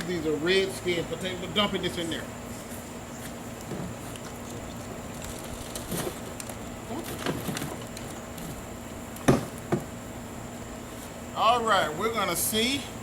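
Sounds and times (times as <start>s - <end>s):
loud thumps: 9.2s - 9.9s.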